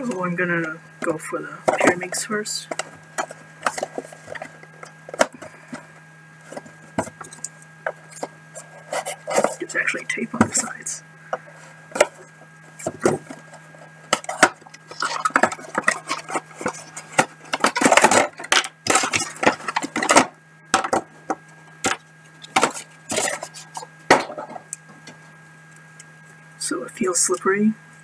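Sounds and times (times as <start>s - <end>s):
electrical hum: 0.0s - 28.0s.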